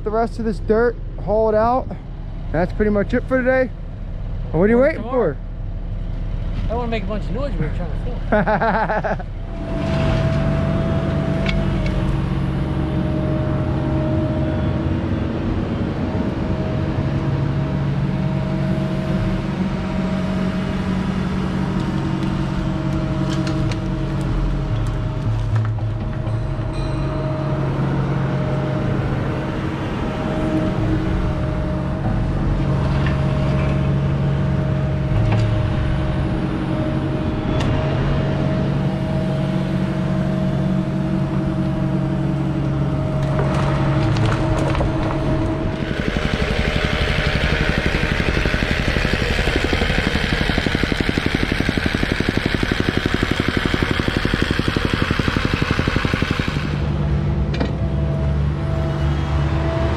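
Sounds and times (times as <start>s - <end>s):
excavator engine running: 0.0s - 59.9s
fast even pounding: 45.7s - 57.0s.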